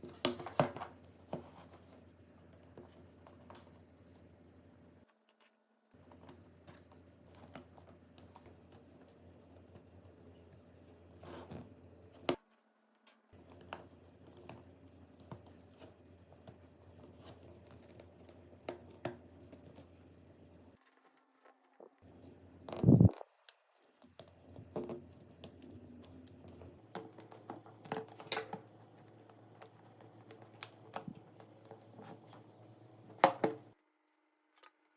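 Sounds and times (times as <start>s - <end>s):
low steady hum: 21.8s - 23.2s.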